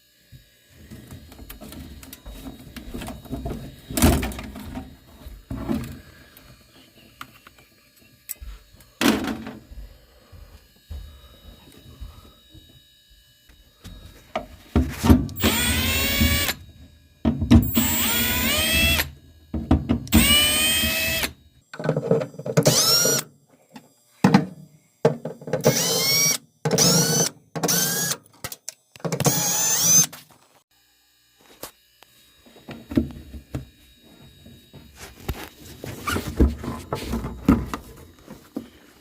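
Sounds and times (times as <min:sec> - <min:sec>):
power drill whining: 0:00.0 - 0:09.0, 0:10.0 - 0:21.6, 0:22.6 - 0:23.2, 0:25.6 - 0:28.3, 0:29.2 - 0:30.4.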